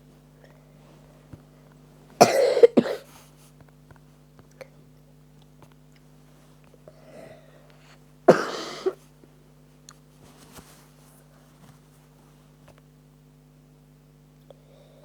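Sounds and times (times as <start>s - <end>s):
low steady hum: 0.0s - 15.0s
person coughing: 2.2s - 3.1s, 8.3s - 9.0s.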